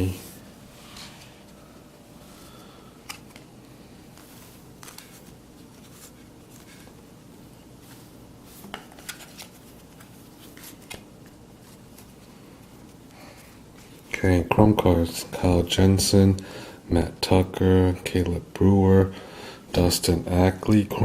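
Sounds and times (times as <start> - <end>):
cards rustling: 3.0 - 7.0, 7.8 - 13.0.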